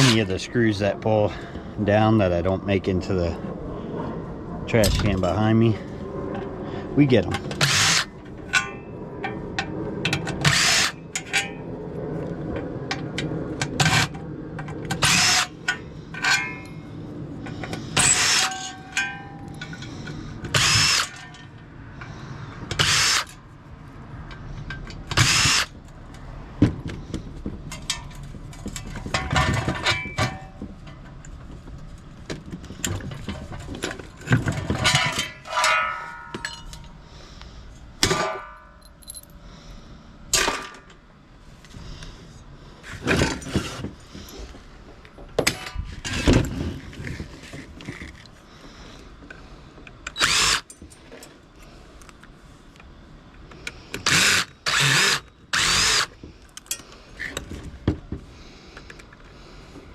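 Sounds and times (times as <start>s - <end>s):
small clinks and knocks: 32.8s - 37.0s, 38.3s - 39.4s.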